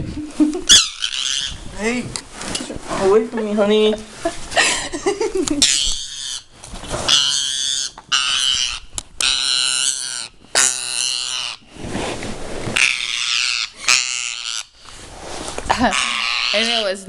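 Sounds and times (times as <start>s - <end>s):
parrot screeching: 0.7s - 1.7s, 5.6s - 11.7s, 12.8s - 14.8s, 15.8s - 16.9s.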